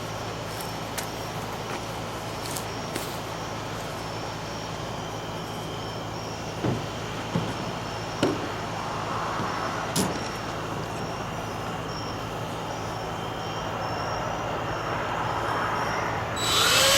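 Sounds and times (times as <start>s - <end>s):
electric drill cutting steel: 16.4s - 16.9s.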